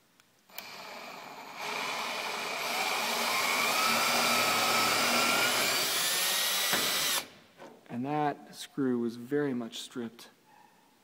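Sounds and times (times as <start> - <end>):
power drill motor whine: 0.5 - 7.3.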